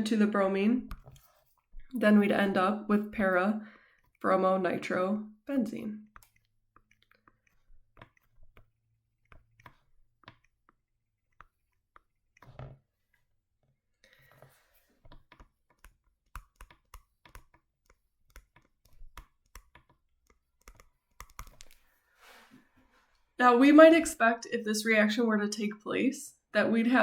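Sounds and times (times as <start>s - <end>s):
computer mouse clicking: 6.0s - 12.6s, 15.0s - 21.8s.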